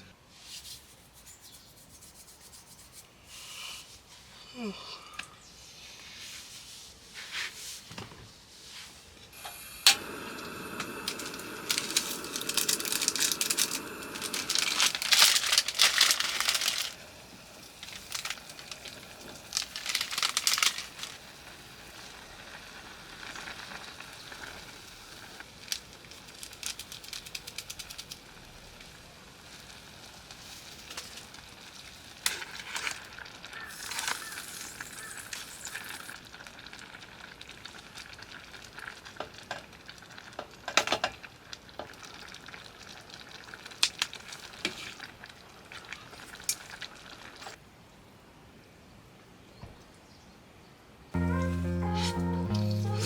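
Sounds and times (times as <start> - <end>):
food sizzling in a pan: 9.4 - 40.6.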